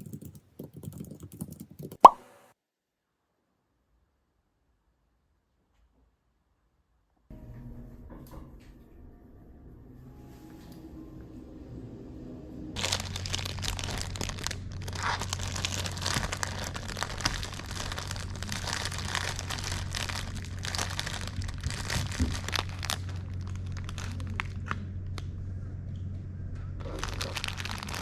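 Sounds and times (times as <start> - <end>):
dense crinkling and crackling: 12.8 - 25.4, 26.8 - 28.0.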